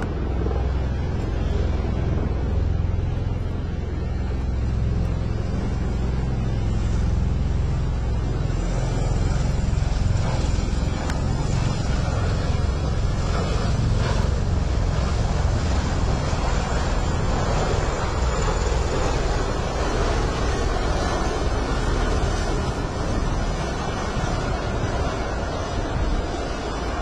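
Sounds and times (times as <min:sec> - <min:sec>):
helicopter rotors beating: 0:00.0 - 0:27.0
wind blowing on microphone: 0:07.9 - 0:27.0.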